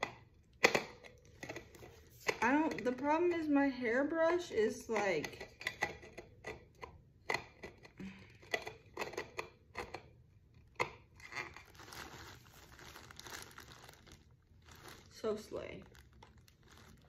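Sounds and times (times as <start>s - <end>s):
packaging rustling and crinkling: 11.1s - 17.0s.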